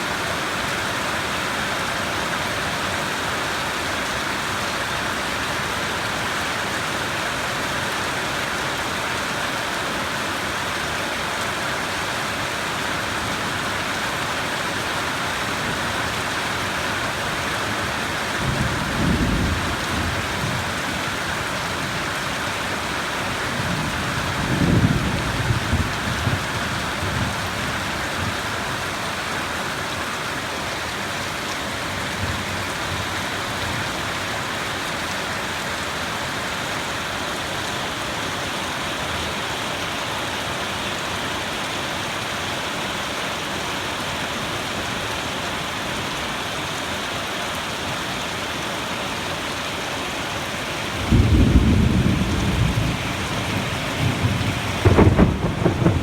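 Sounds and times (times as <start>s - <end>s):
steady rain falling: 0.0s - 56.0s
thunder rolling: 51.0s - 56.0s.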